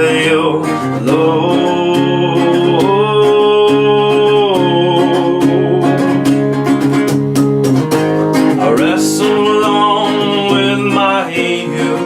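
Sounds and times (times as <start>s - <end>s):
person singing: 0.0s - 6.5s, 8.6s - 12.0s
strummed acoustic guitar: 0.0s - 12.0s.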